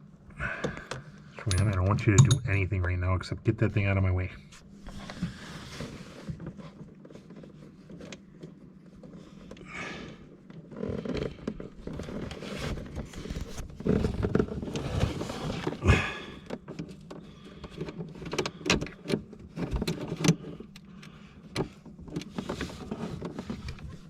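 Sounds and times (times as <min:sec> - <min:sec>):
sharp clicks and knocks: 0:00.9 - 0:02.9.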